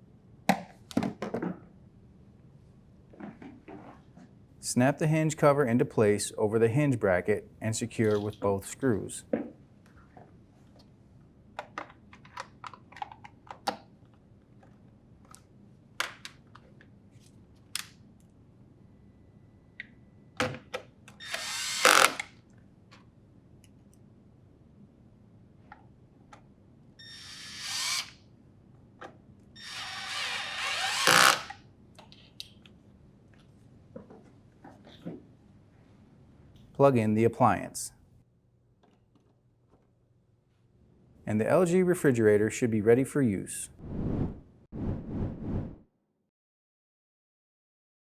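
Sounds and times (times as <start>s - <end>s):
cordless drill driving screws: 21.2s - 22.3s, 27.0s - 28.2s, 29.6s - 31.6s.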